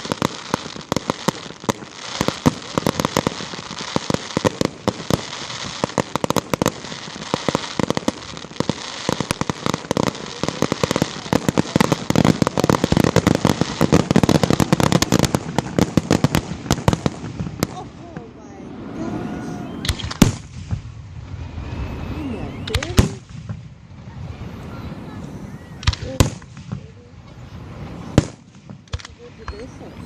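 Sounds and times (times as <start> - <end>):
fireworks bangs and crackles: 0.0 - 30.0.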